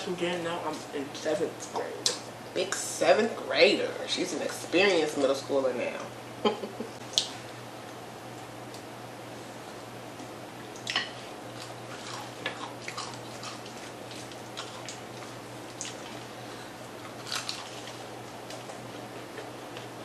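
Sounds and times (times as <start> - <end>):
crunchy chewing: 10.7 - 20.0.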